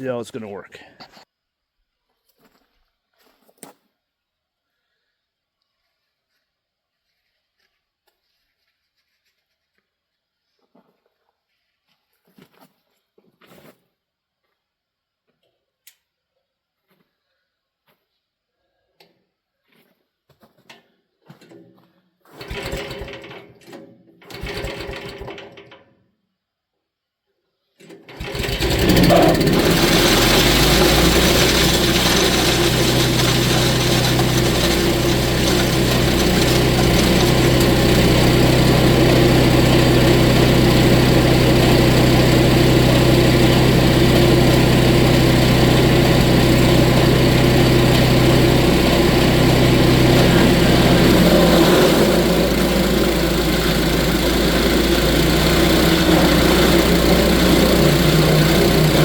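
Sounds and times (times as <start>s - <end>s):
small gasoline engine running: 22.4s - 23.6s, 24.3s - 25.7s, 27.9s - 59.0s.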